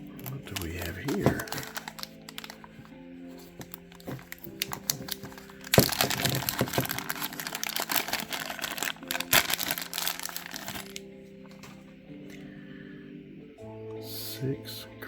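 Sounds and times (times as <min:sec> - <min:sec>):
packaging crinkling: 0:00.1 - 0:11.1
sharp packaging cracks: 0:00.2 - 0:02.8, 0:03.6 - 0:11.0.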